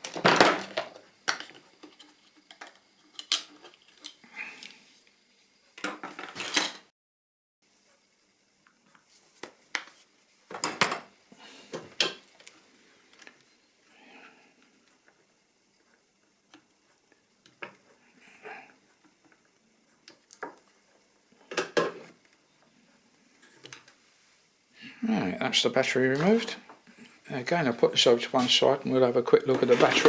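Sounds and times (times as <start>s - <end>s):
small hard parts clattering: 29.4s - 30.0s.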